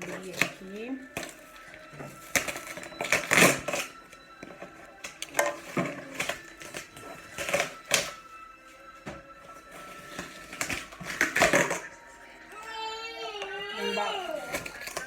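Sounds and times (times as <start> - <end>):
cardboard rustling and tearing: 0.0 - 4.0, 14.2 - 15.0.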